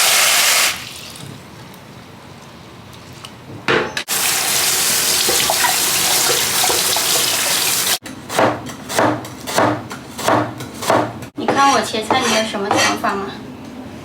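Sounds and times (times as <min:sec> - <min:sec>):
tap water running into sink: 0:04.1 - 0:08.0.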